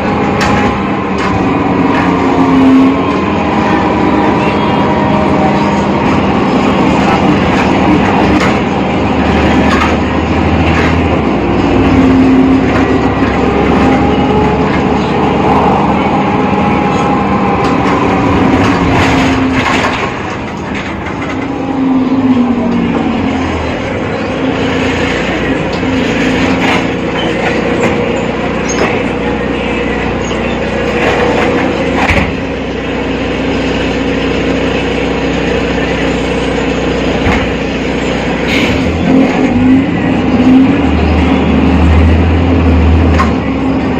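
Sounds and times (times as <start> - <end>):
gliding whine: 0.0 - 32.0
bus drivetrain rumbling: 0.0 - 43.9
rattles and clicks: 0.1 - 2.4, 5.5 - 21.6, 25.0 - 29.2.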